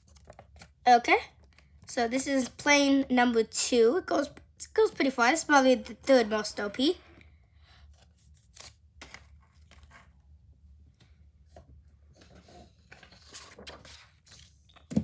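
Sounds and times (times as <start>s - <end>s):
paper rustling: 0.0s - 0.8s, 7.8s - 10.2s, 11.0s - 15.0s.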